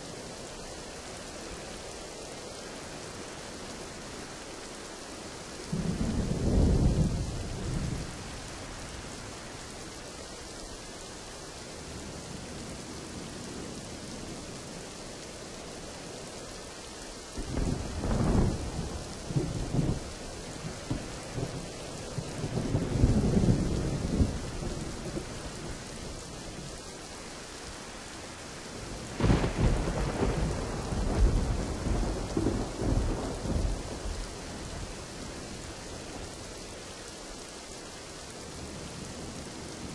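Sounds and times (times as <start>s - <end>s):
steady rain falling: 0.0s - 39.9s
thunder rumbling: 5.7s - 9.3s, 17.3s - 25.9s, 28.8s - 36.4s.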